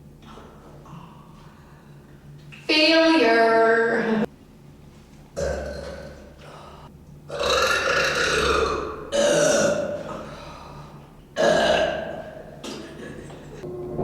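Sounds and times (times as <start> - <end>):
woman burping: 5.4 - 6.2, 7.3 - 10.2, 11.4 - 13.4.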